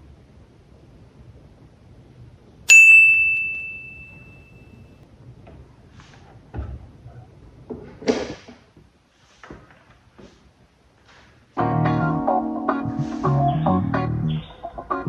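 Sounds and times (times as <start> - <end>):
music: 11.6 - 15.0.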